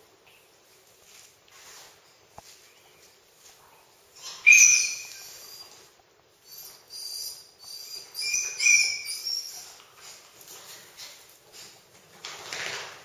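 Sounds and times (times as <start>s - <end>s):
high-pitched animal squeals: 4.2s - 5.6s, 6.5s - 9.7s.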